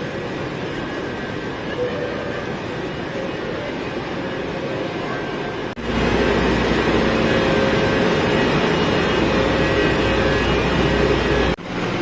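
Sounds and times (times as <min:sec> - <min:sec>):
train rumble and hiss: 0:00.0 - 0:12.0.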